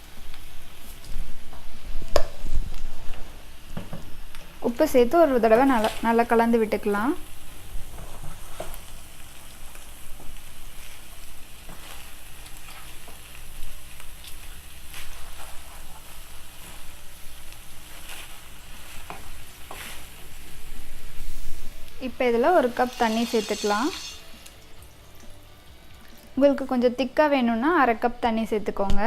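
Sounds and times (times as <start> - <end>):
chicken sizzling in a pan: 0.0 - 26.6
spoon scraping pan: 22.6 - 24.3.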